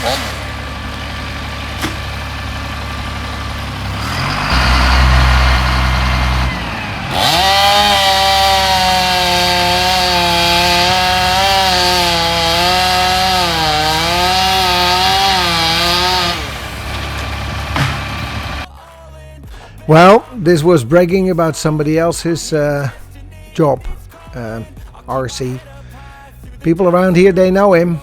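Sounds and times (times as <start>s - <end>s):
chainsaw revving and cutting: 0.0s - 18.7s
low engine hum: 0.0s - 18.7s.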